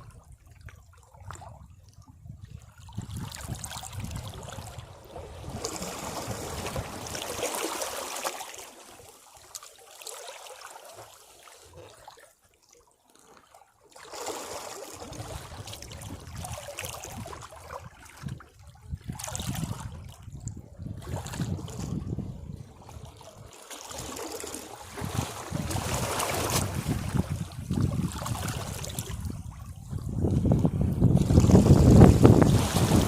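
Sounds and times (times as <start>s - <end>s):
sea waves washing over rocks: 3.9s - 9.0s, 23.4s - 33.0s.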